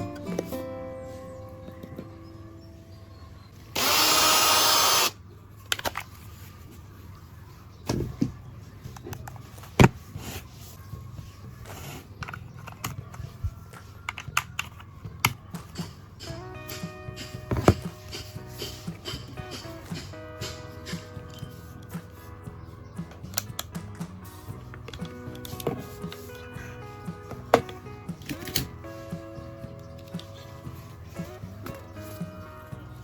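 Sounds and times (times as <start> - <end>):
power tool burst: 3.8 - 5.2
handling clicks and knocks: 11.7 - 22.1, 23.0 - 26.5, 27.1 - 28.9.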